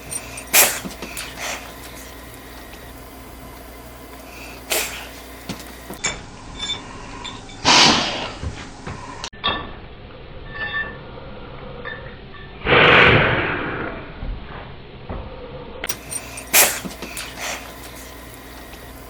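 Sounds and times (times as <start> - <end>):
cat sneezing: 0.5 - 1.7, 4.7 - 5.2, 7.7 - 8.4, 16.5 - 17.6.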